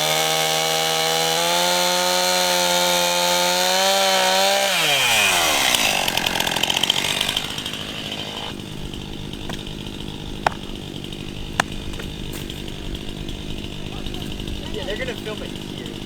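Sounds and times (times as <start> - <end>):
chainsaw revving and idling: 0.0 - 16.0
sharp knocks: 11.5 - 12.7.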